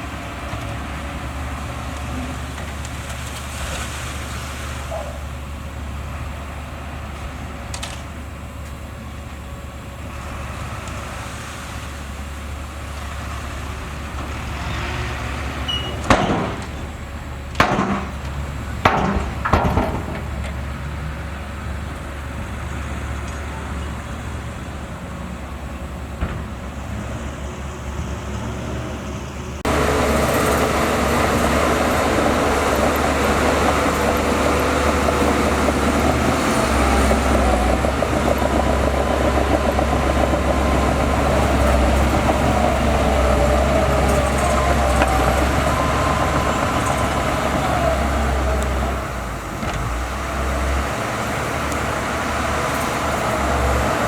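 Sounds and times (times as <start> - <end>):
bulldozer diesel engine running: 0.0 - 54.0
loud metallic clanks: 15.7 - 20.6.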